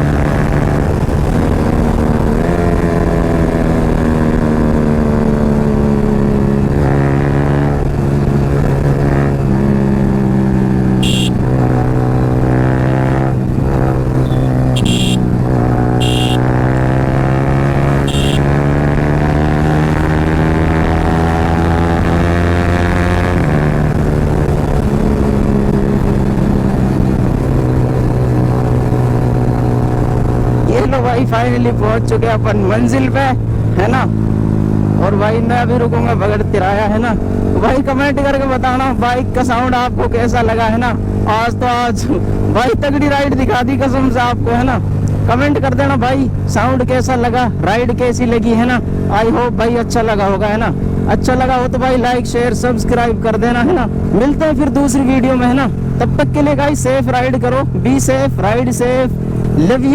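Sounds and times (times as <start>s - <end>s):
motorcycle engine revving: 0.0s - 30.7s
short sharp high sounds: 11.0s - 11.4s, 14.3s - 15.3s, 16.0s - 16.4s, 18.1s - 18.4s.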